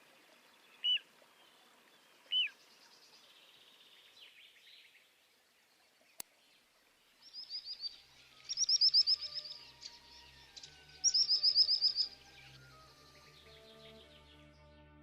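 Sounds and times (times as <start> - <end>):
songbird trilling: 0.1 - 5.1, 7.2 - 14.1
soft background music: 7.2 - 15.0.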